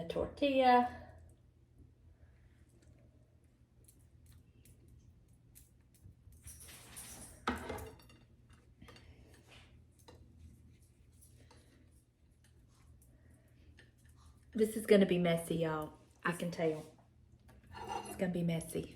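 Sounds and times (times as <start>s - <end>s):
spoon scraping a dish: 17.6s - 18.3s.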